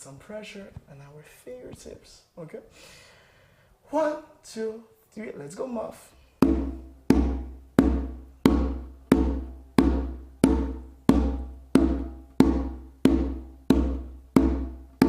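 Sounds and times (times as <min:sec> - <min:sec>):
hand drum muffled strokes: 0:06.4 - 0:15.0.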